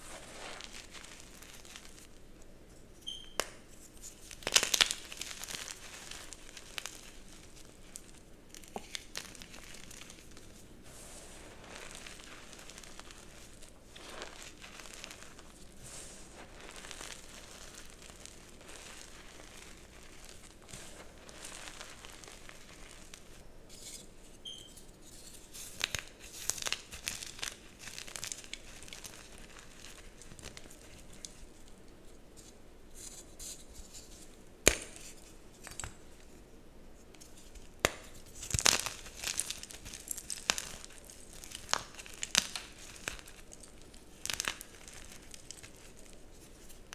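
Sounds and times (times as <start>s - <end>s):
chalk crumbling and crunching: 0.0s - 2.2s, 3.4s - 24.4s, 25.0s - 36.3s, 37.1s - 46.9s
chalk snapping: 37.2s - 46.6s.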